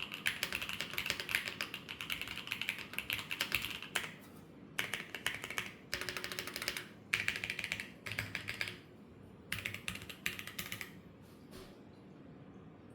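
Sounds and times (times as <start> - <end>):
mechanical keyboard typing: 0.0 - 4.2, 4.8 - 8.8, 9.5 - 11.0.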